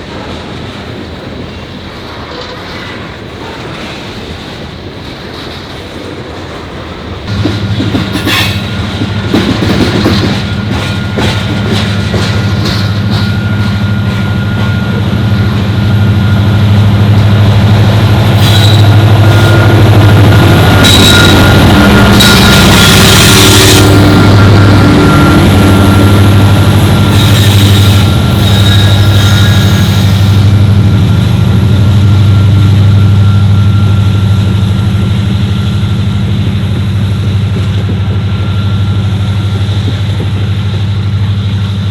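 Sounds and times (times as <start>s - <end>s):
diesel locomotive engine drone: 0.0s - 41.9s
train wheels clicking over rail joints: 0.1s - 15.8s
train wheels squealing: 7.9s - 41.8s.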